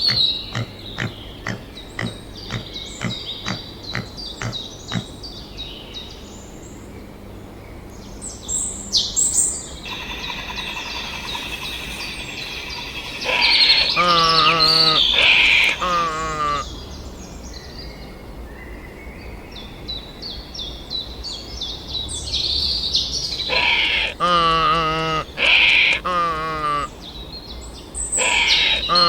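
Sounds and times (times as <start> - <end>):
birds chirping and singing: 8.5 - 17.2, 28.0 - 29.0
low wavering bird call: 9.8 - 16.9.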